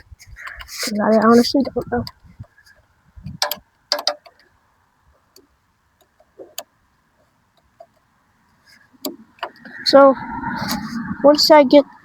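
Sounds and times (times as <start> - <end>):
hand tools clicking on a bolt: 3.3 - 4.5.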